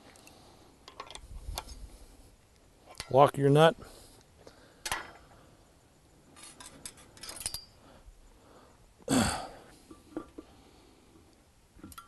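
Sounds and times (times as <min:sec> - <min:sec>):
light metal clicks and clinks: 0:06.4 - 0:07.8.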